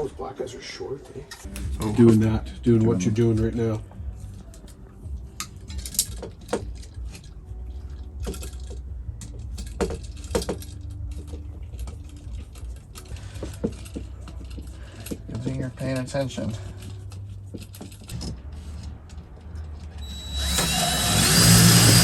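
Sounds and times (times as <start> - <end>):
clicks and rattles of wiring parts: 5.4 - 20.1.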